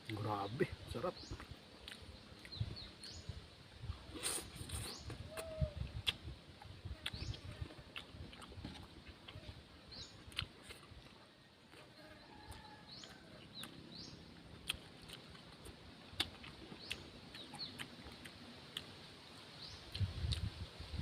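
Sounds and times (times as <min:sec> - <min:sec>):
chickens clucking and peeping: 0:00.1 - 0:20.6
eating clicks and smacks: 0:01.2 - 0:03.2, 0:04.7 - 0:09.4, 0:10.3 - 0:11.1, 0:13.6 - 0:13.8, 0:14.4 - 0:19.0, 0:19.8 - 0:20.6.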